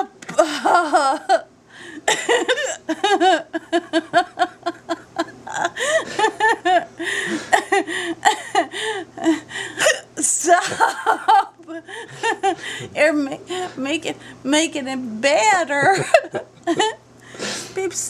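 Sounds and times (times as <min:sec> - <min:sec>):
woman laughing hard: 0:00.3 - 0:01.5, 0:02.1 - 0:09.6, 0:10.4 - 0:13.0, 0:15.8 - 0:17.0
breathy gasps: 0:07.0 - 0:09.8, 0:11.9 - 0:14.4.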